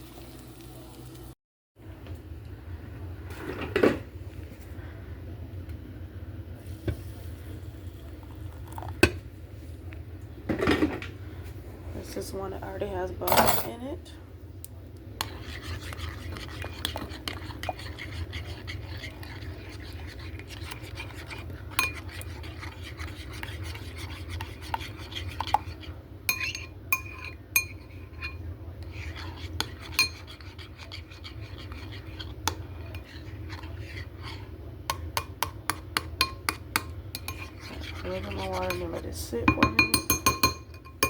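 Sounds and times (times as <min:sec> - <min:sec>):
utensils and dishes clinking: 0:13.2 - 0:13.9.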